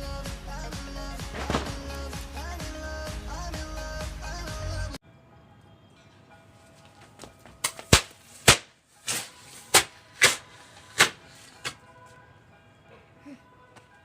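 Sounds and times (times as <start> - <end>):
firecrackers popping: 7.6 - 11.8.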